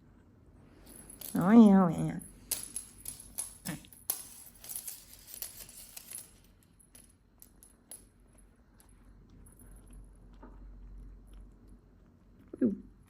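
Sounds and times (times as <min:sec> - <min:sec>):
cat toy jingling and clicking: 0:00.9 - 0:08.0.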